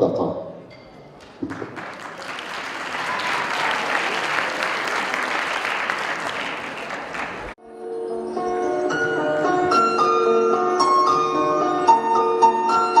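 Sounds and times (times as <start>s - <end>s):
audience applauding: 1.1s - 7.6s
music: 7.6s - 13.0s.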